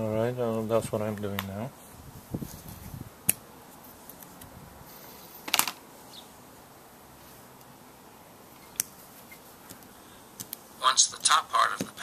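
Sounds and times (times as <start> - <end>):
low steady hiss: 0.0 - 12.0.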